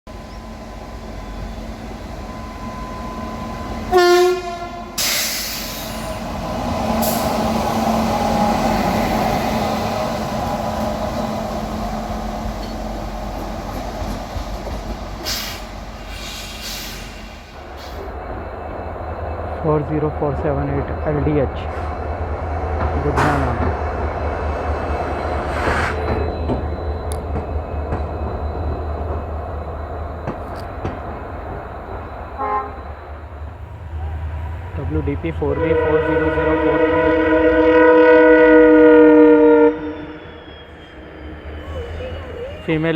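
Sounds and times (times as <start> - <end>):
train wheels rolling on rails: 0.1 - 36.2
diesel locomotive engine rumble: 0.1 - 42.9
locomotive horn toot: 3.8 - 5.5, 32.4 - 32.9, 35.4 - 40.8.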